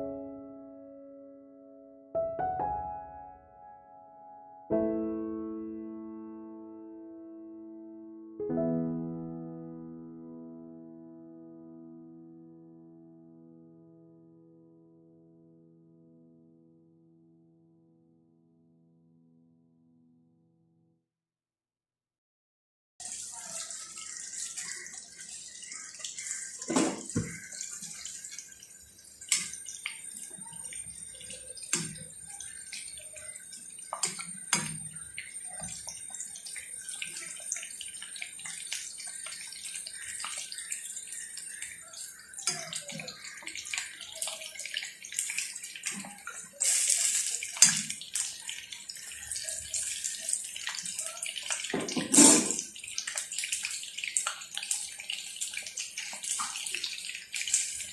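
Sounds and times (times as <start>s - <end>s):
food deep-frying in hot oil: 23.0s - 57.9s.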